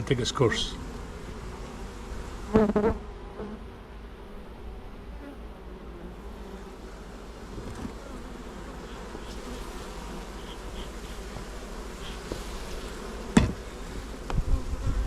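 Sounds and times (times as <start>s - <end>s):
bees buzzing: 0.0s - 15.0s
sharp knock: 13.4s - 13.6s.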